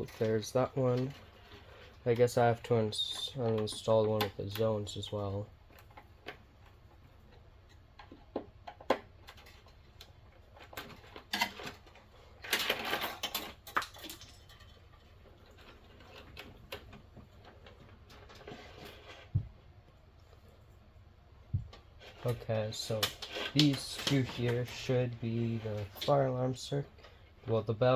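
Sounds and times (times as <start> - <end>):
rustling scrape: 18.1 - 19.4, 22.0 - 26.3.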